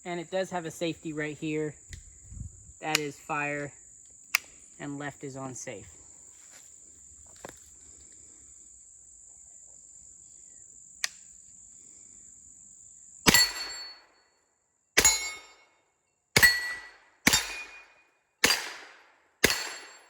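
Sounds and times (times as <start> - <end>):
cricket trilling: 0.0 - 13.6
gunshots with ringing tail: 13.3 - 14.0, 15.0 - 15.5, 16.4 - 20.0.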